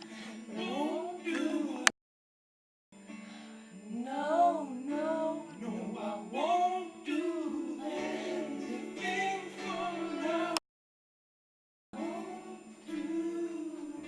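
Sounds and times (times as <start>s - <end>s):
young voices singing: 0.1s - 1.9s, 4.0s - 10.6s, 12.0s - 14.0s.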